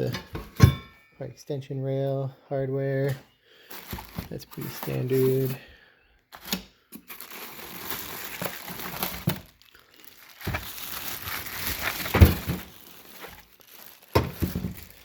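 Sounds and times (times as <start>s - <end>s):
packaging crinkling and rustling: 3.7s - 5.6s, 6.3s - 15.0s.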